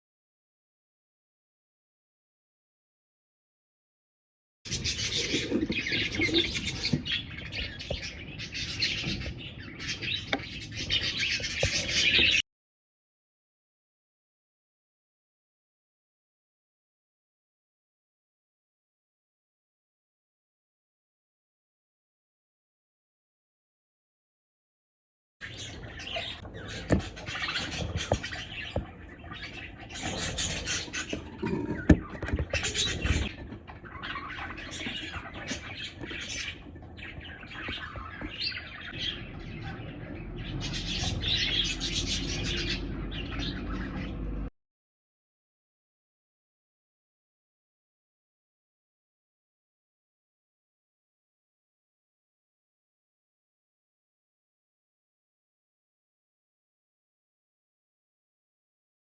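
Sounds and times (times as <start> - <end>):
budgerigars chattering and chirping: 4.7 - 12.4, 25.4 - 44.3.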